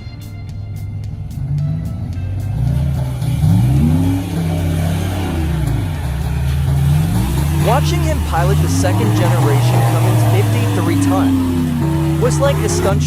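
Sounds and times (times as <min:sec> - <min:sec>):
vehicle engine revving: 0:01.0 - 0:13.0.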